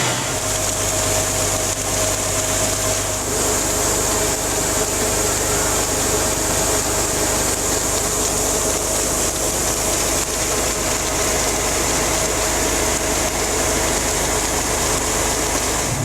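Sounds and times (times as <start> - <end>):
machinery whining tones: 0.0 - 0.9
heavy engine drone: 0.0 - 16.0.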